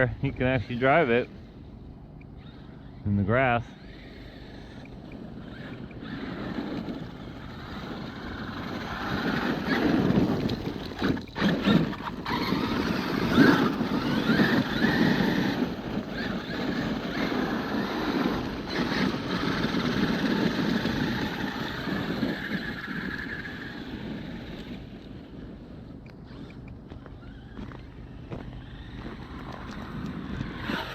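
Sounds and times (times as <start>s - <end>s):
tyres and drivetrain noise: 0.0s - 30.9s
electric toy truck motor whine: 0.1s - 30.9s.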